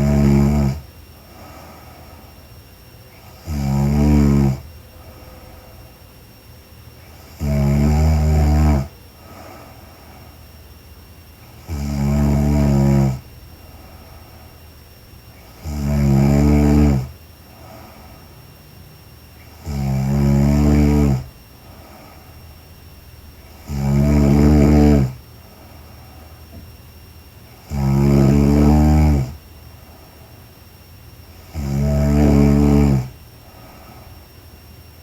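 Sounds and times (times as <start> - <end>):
woman snoring: 0.0 - 2.2, 3.2 - 5.2, 7.1 - 10.0, 11.5 - 14.3, 15.4 - 18.3, 19.5 - 22.5, 23.4 - 25.2, 27.5 - 29.4, 31.3 - 34.0.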